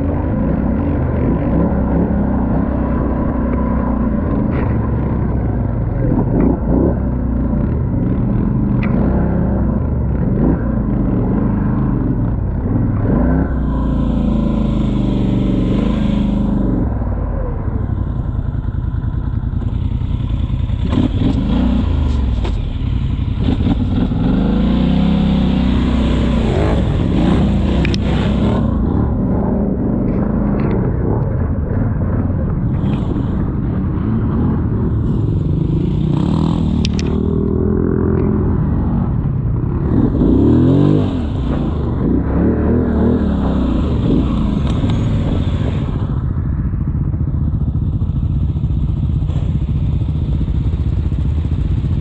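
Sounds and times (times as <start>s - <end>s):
quad bike engine revving: 0.0s - 52.0s
knocks and clatter over rough ground: 0.1s - 11.6s.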